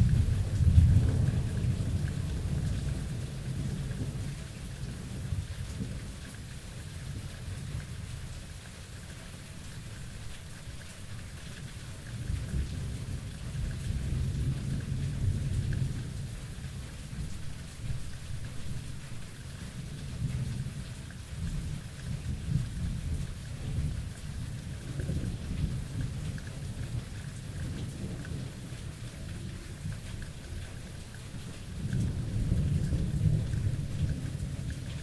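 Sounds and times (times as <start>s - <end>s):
rolling thunder: 0.0s - 6.2s, 12.1s - 18.7s, 21.4s - 35.0s
steady rain hissing: 0.0s - 35.0s.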